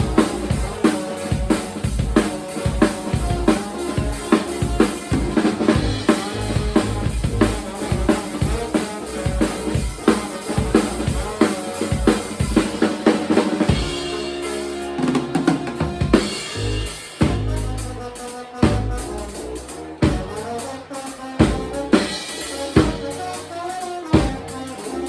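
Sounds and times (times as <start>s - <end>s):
drum kit hits: 0.0s - 25.0s
live band instrumental: 0.0s - 25.0s
low bass notes: 3.2s - 11.4s, 13.7s - 20.8s, 21.4s - 23.4s.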